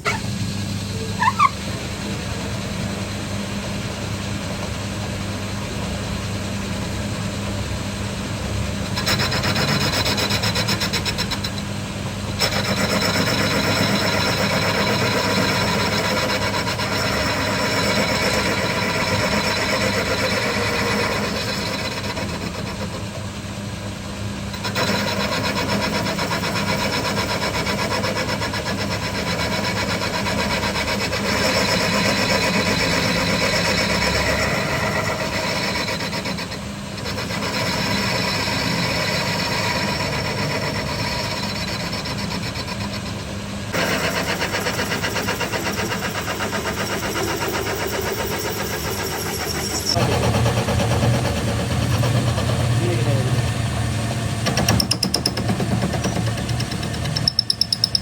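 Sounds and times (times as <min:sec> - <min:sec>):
motor-driven machine running: 0:00.0 - 0:23.2, 0:24.4 - 0:58.0.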